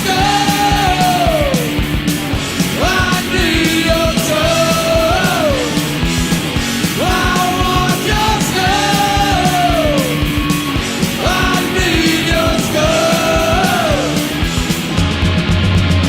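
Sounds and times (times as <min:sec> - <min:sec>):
person singing: 0:00.0 - 0:01.9, 0:02.6 - 0:05.9, 0:06.9 - 0:14.4
rock music: 0:00.0 - 0:16.0.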